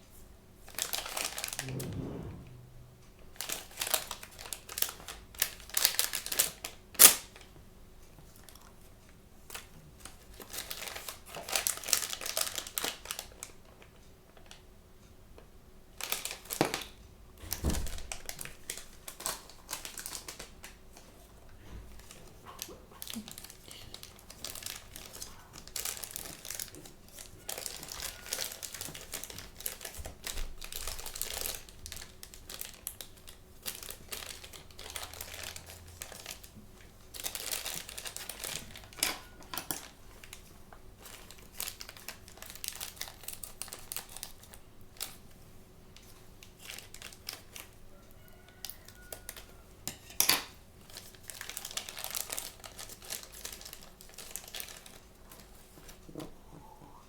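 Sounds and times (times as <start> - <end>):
toy packaging crinkling and tearing: 31.2 - 39.8, 50.8 - 56.0.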